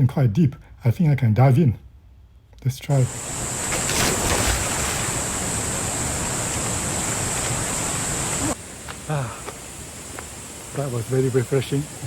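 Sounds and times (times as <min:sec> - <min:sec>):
water rushing: 0:03.0 - 0:08.6
water splashing: 0:03.1 - 0:08.6.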